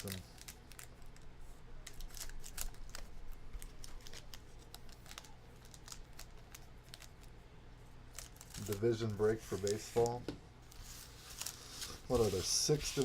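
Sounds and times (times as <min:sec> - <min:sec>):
wrapper crinkling: 0:00.0 - 0:07.3, 0:08.1 - 0:13.0
cards clicking and rustling: 0:08.1 - 0:13.0.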